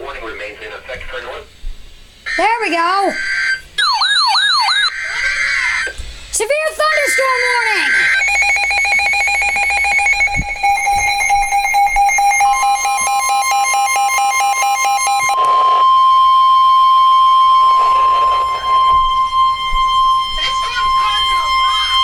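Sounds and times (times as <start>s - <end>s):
rapidly pulsing alert beeps: 6.9s - 15.4s, 17.4s - 22.0s
steady single-pitch alert tone: 6.9s - 22.0s.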